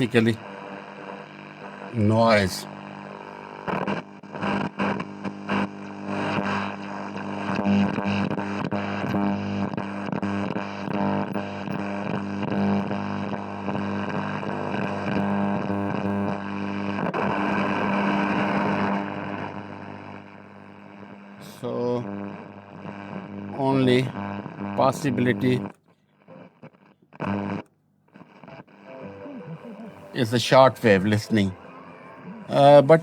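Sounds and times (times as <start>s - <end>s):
radio static: 0.0s - 13.0s, 17.0s - 27.6s, 28.2s - 33.0s
radio hum and buzzing: 0.0s - 33.0s
crackling clicks: 25.6s - 29.2s.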